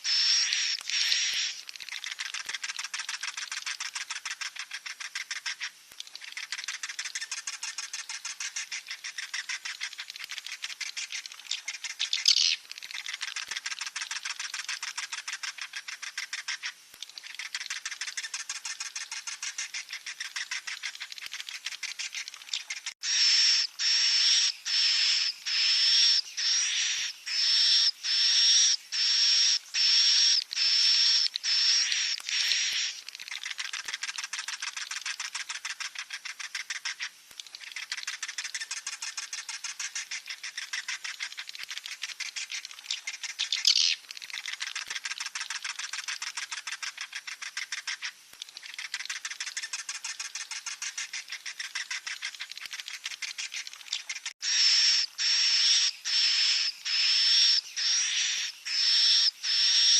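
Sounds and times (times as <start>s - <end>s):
buzzy chittering: 0.0s - 37.0s
loud sharp high chick chirps: 23.0s - 33.0s, 54.4s - 59.9s.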